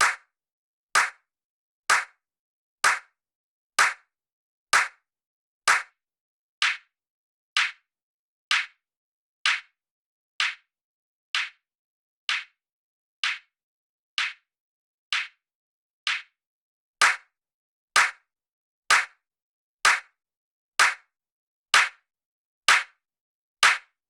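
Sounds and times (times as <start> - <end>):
electronic hand clap: 0.0 - 0.2, 1.0 - 1.2, 1.9 - 2.1, 2.8 - 3.1, 3.8 - 4.0, 4.8 - 5.0, 5.7 - 5.9, 17.0 - 17.2, 18.0 - 18.2, 18.9 - 19.1, 20.8 - 21.0, 22.7 - 22.9, 23.6 - 23.9.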